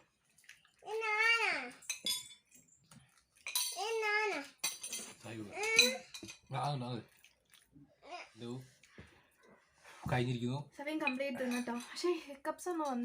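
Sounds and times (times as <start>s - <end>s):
cutlery clinking against a dish: 1.8s - 2.6s, 3.4s - 3.9s, 4.5s - 6.8s, 11.0s - 12.0s.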